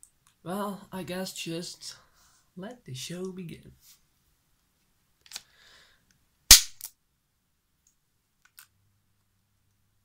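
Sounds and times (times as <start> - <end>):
loud sharp crack: 6.5 - 6.9
small clicks: 7.8 - 8.8.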